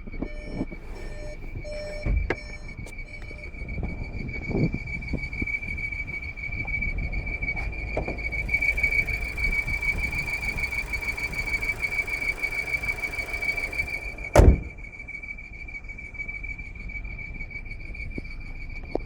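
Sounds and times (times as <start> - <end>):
high-pitched car squeak: 0.0 - 15.0
low rumble: 0.0 - 19.0
loud thump: 14.3 - 14.8.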